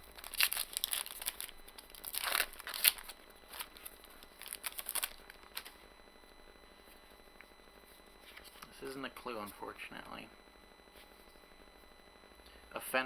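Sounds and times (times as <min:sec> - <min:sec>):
foil wrapper tearing and crinkling: 0:00.0 - 0:05.7.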